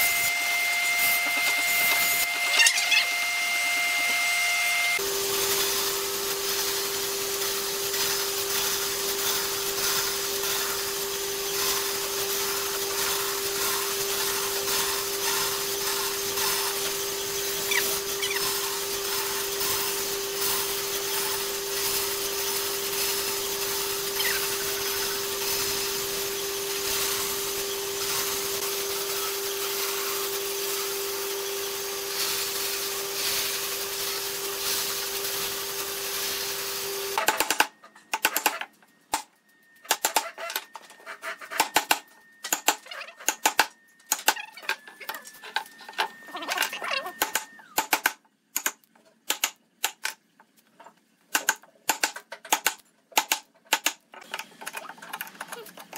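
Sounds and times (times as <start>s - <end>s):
power tool humming: 0.0s - 37.2s
clicks and knocks of tools and wood: 37.2s - 55.9s.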